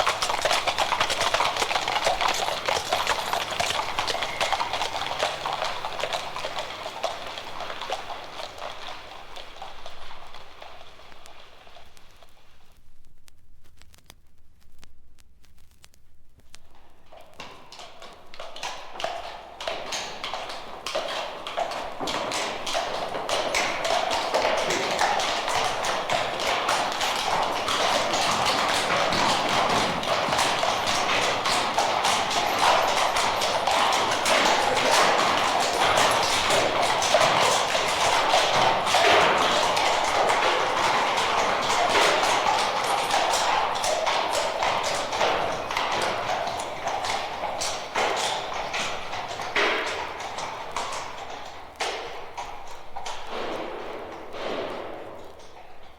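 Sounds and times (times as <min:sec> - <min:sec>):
dense clatter of rapid taps: 0:00.0 - 0:12.4, 0:16.4 - 0:55.9.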